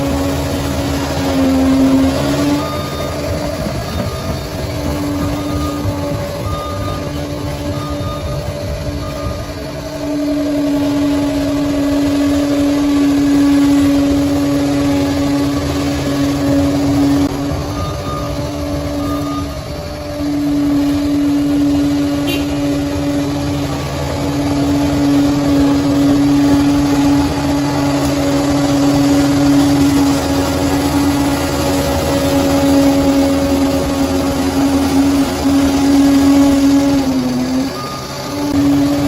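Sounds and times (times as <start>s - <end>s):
bulldozer diesel engine running: 0.0s - 39.0s.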